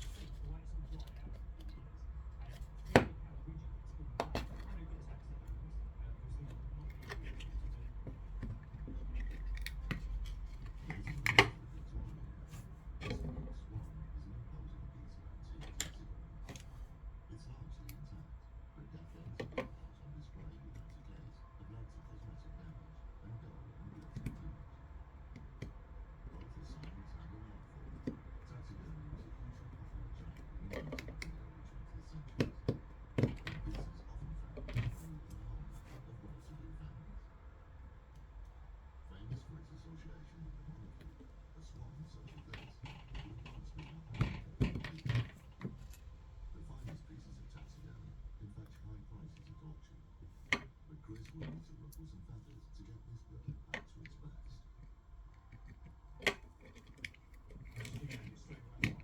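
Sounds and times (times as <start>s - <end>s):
low steady hum: 0.0s - 59.0s.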